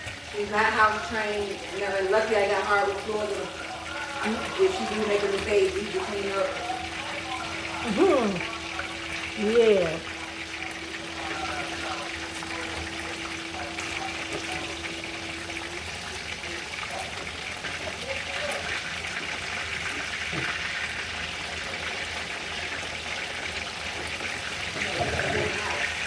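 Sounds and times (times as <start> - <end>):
faint steady hum: 0.0 - 20.6
water running from a tap: 0.0 - 26.0.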